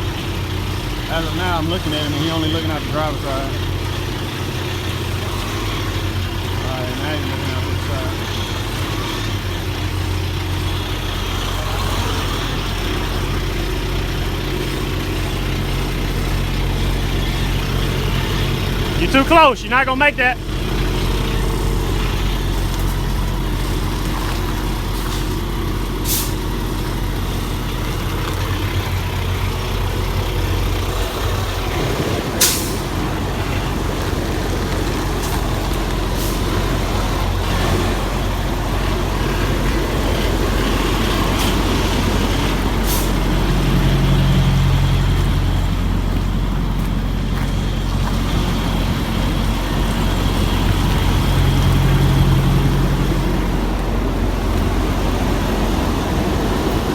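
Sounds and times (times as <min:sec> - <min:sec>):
diesel truck engine running: 0:00.0 - 0:56.9
air brake hisses: 0:26.0 - 0:26.4.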